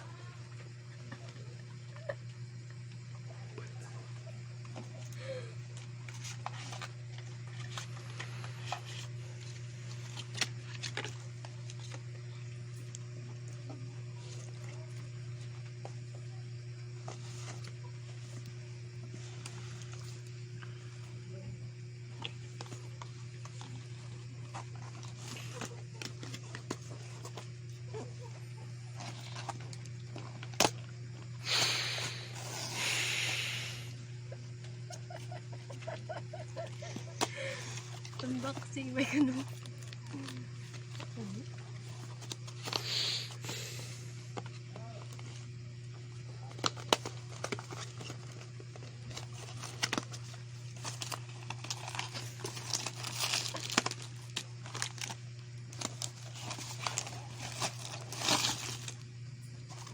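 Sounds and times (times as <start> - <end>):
steady low hum: 0.0 - 59.9
packaging crinkling rustle: 5.2 - 12.1, 29.0 - 33.7, 46.4 - 59.9.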